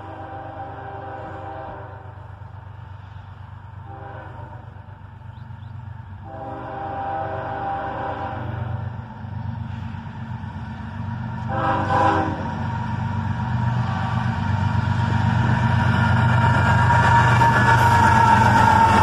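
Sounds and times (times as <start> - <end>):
locomotive horn blast: 0.0 - 2.2, 3.8 - 4.9, 6.2 - 8.9, 11.4 - 12.6
diesel locomotive rumbling: 0.0 - 19.0.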